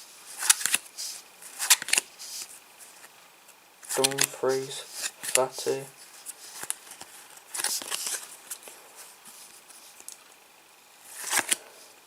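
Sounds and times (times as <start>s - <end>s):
trading cards clicking: 1.6s - 2.0s, 3.9s - 5.8s
card swishing: 3.9s - 5.8s
papery rustle: 3.9s - 10.1s.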